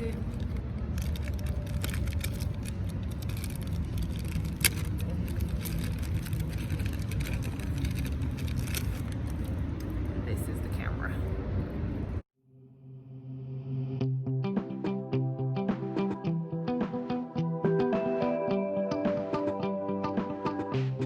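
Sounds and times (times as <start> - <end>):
wrapping crinkling and rustling: 0.0 - 9.9
low outdoor rumble: 0.0 - 12.3.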